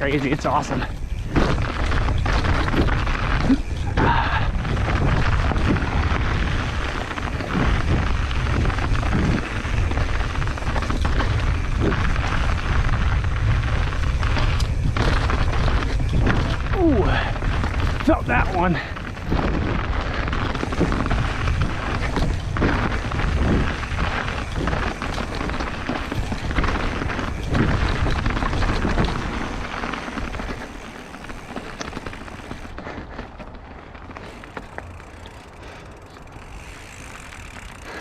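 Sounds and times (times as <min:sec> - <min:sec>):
mountain bike rattling over rocks: 0:00.0 - 0:38.0.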